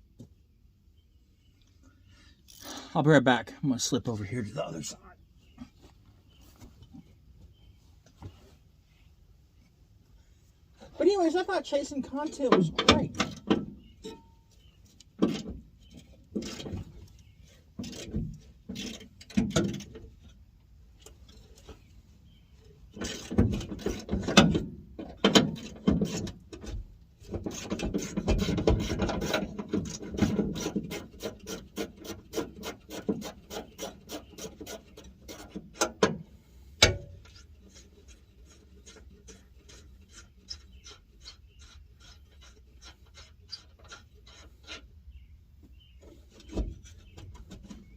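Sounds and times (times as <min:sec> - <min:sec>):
hand tools rasping on bolts: 0:22.9 - 0:24.5, 0:25.1 - 0:36.2, 0:36.8 - 0:45.0.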